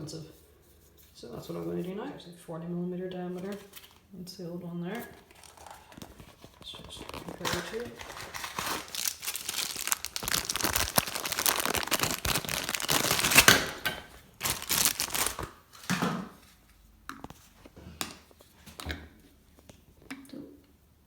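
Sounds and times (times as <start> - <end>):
packaging crinkling and tearing: 5.0 - 16.0.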